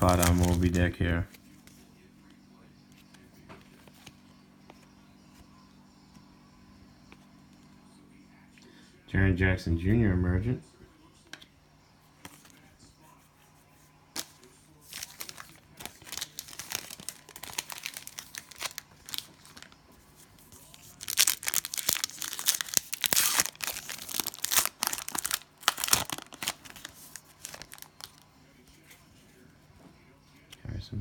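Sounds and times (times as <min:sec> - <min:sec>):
cellophane wrapper tearing and crinkling: 0:00.0 - 0:01.0, 0:14.9 - 0:19.8, 0:20.4 - 0:28.2.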